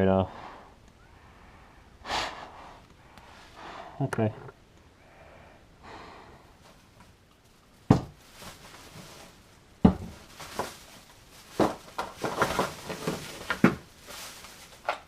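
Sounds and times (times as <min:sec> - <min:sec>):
objects knocking and clattering: 0:07.8 - 0:13.9.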